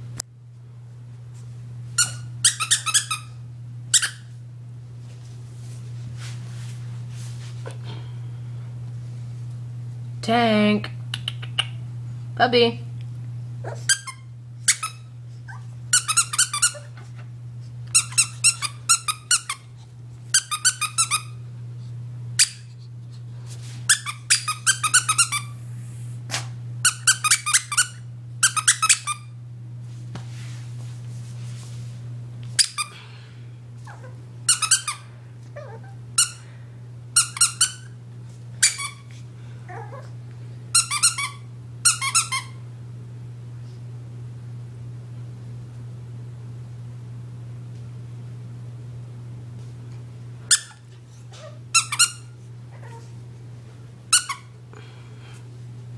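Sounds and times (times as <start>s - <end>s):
squeaky dog toy squeaking: 2.0s - 3.3s, 3.9s - 4.2s, 13.9s - 15.0s, 38.6s - 39.0s, 40.8s - 42.5s, 51.7s - 52.3s.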